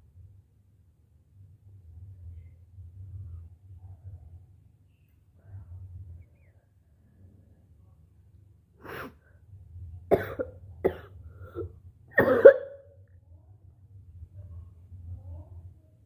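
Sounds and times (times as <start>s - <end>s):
person coughing and hawking: 10.1s - 12.8s.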